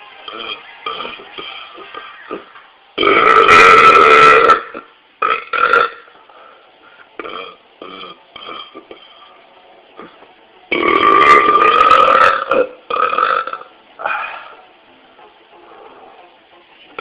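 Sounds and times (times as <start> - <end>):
man burping: 3.0 - 6.1, 7.2 - 9.1, 10.7 - 14.5.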